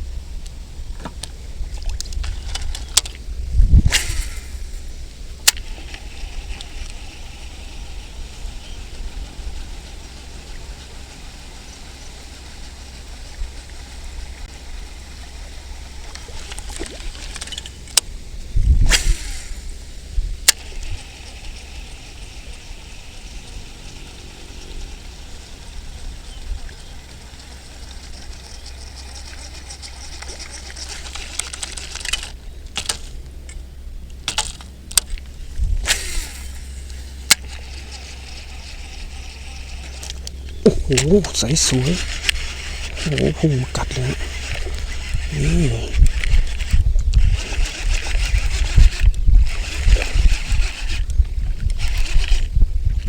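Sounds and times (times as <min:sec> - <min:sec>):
wind buffeting microphone: 0:00.0 - 0:12.1, 0:18.0 - 0:22.0, 0:35.1 - 0:53.0.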